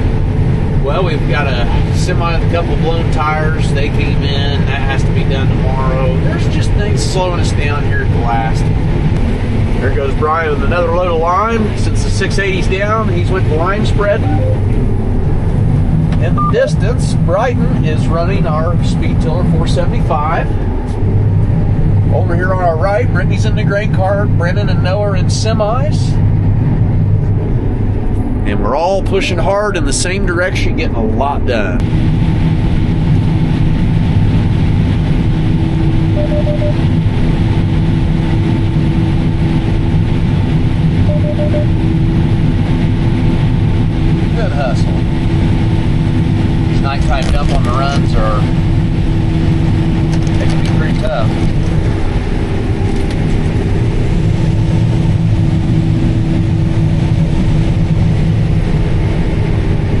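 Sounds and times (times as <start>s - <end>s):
combine harvester engine drone: 0.0s - 60.0s
high-pitched drone: 10.5s - 15.4s, 35.5s - 37.4s, 41.0s - 42.4s
faint quick beeps: 14.2s - 14.6s, 36.1s - 36.8s.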